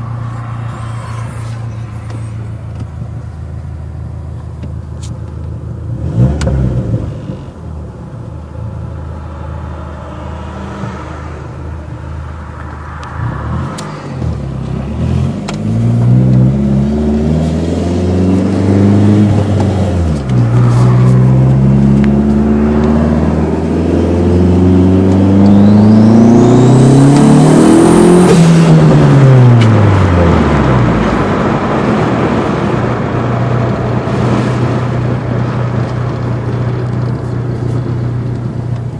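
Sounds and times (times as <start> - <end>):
high rising turbo whine: 0.0 - 4.3
car engine accelerating: 0.0 - 7.6, 8.4 - 38.9.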